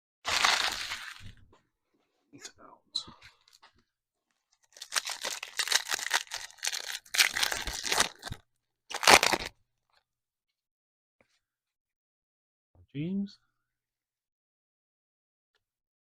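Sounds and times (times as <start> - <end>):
plastic wrapper tearing and crumpling: 0.3 - 1.2, 4.6 - 9.5.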